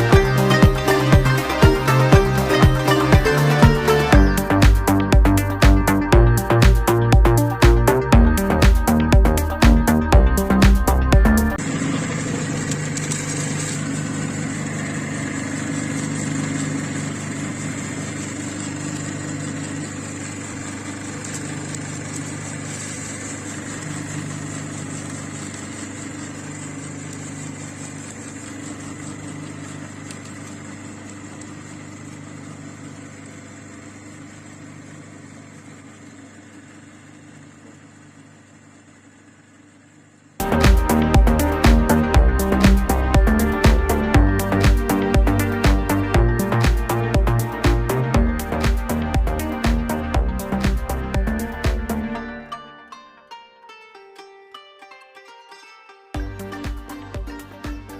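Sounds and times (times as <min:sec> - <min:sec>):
meat grinder motor humming: 0:00.0 - 0:52.5.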